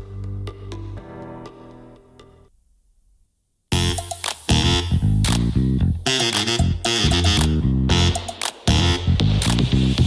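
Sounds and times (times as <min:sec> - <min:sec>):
retro funk music: 0:03.7 - 0:10.0.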